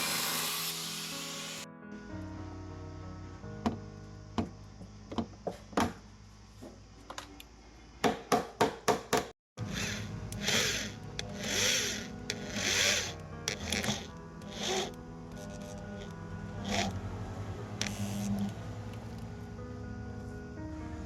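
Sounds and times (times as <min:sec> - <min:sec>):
background music: 0:00.0 - 0:05.4, 0:09.6 - 0:21.0
slow rasping strokes: 0:09.6 - 0:17.0.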